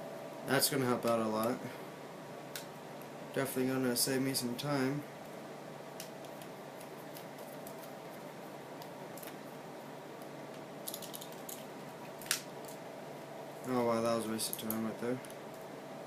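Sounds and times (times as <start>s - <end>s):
faint steady hum: 0.0s - 16.0s
clicks and rattles of small parts: 10.8s - 12.8s.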